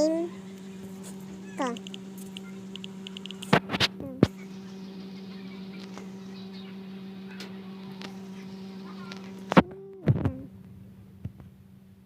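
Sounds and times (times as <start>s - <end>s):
steady low hum: 0.0s - 12.0s
sharp clicks: 1.5s - 4.4s.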